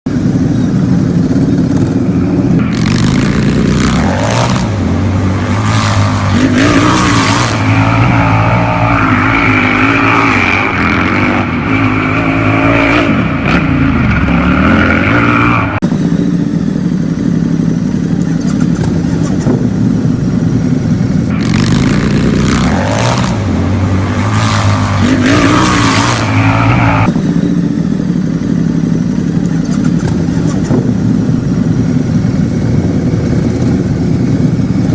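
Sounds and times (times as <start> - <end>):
motorcycle engine revving: 0.1 - 34.9.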